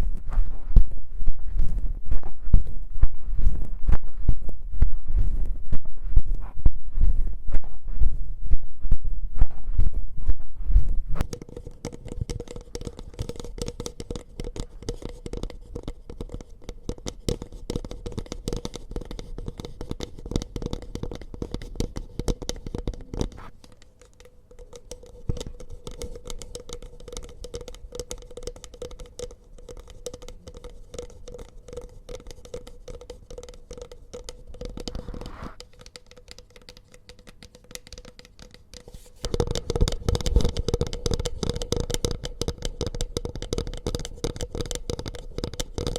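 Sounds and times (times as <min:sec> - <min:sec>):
tapping and scratching: 0:11.2 - 0:45.9.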